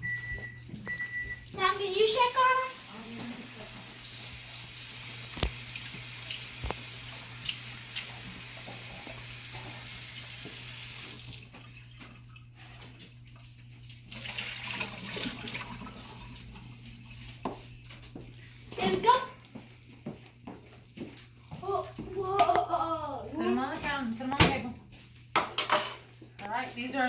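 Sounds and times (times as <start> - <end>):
kitchen tap running: 0.0 - 12.6, 13.3 - 17.6.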